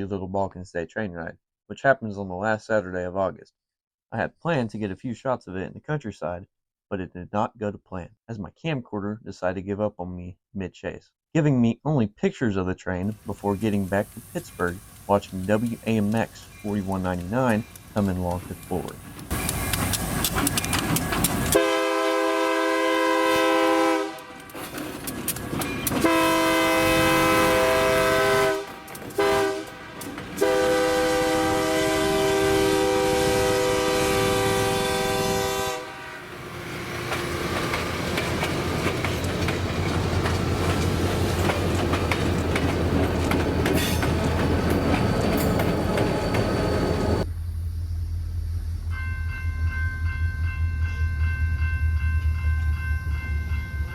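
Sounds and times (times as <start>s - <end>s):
locomotive engine rumbling: 13.2s - 53.9s
train wheels clacking on rails: 18.8s - 21.6s, 36.9s - 47.2s
locomotive air horn blasts: 21.5s - 24.6s, 26.0s - 36.8s.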